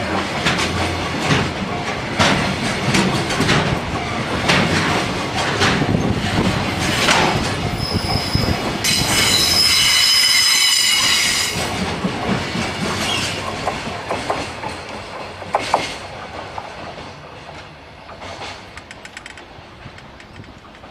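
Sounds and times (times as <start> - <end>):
train wheels clacking over rail joints: 0.0 - 20.9
high-pitched wheel flange squeal: 7.8 - 11.6.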